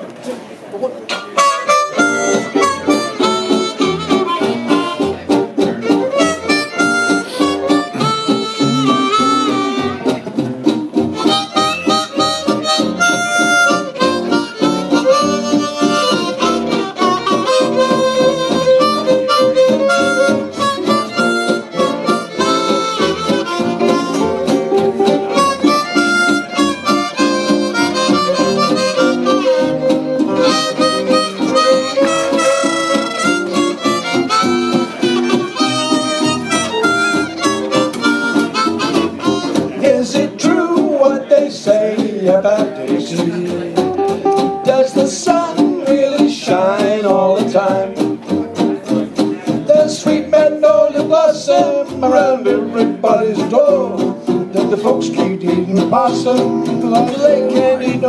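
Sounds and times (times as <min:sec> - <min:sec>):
strummed guitar: 0:01.1 - 0:58.0
reed harmonica melody: 0:01.4 - 0:10.2, 0:10.8 - 0:40.3.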